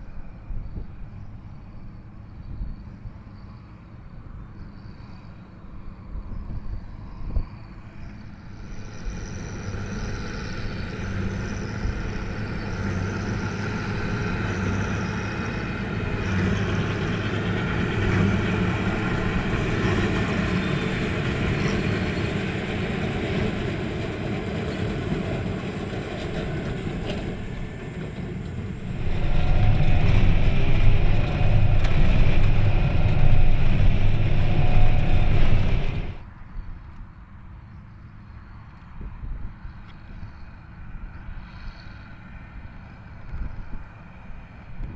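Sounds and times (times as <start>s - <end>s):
tractor diesel engine under load: 7.8s - 36.3s.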